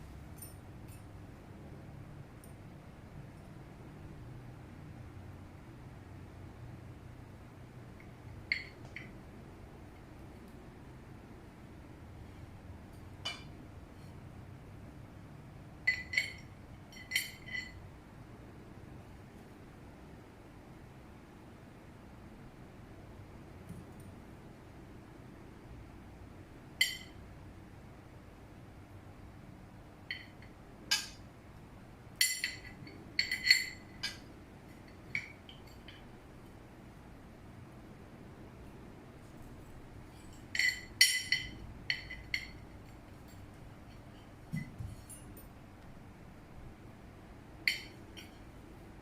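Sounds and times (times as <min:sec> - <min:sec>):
plates clinking: 0:15.9 - 0:17.8, 0:40.2 - 0:42.6.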